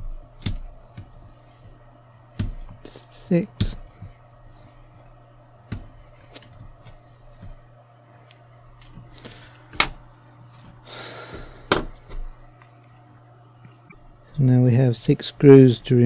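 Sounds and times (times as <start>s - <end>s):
low steady hum: 0.0s - 16.0s.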